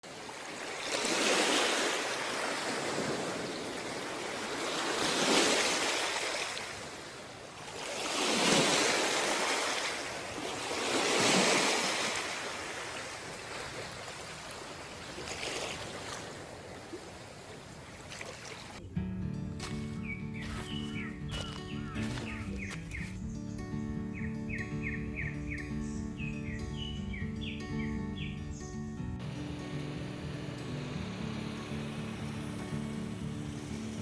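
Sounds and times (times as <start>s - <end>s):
sea waves washing onto beach: 0.0s - 18.8s, 29.2s - 34.0s.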